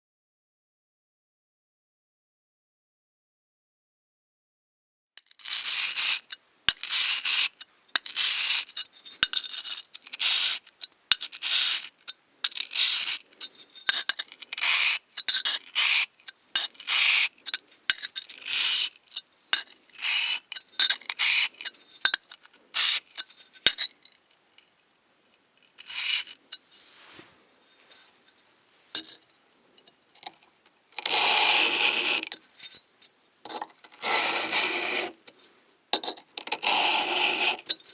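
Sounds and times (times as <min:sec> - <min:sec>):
scraping on sharpening stone: 0:05.2 - 0:24.8, 0:25.6 - 0:26.7, 0:28.9 - 0:32.9, 0:33.5 - 0:35.3, 0:36.0 - 0:37.9.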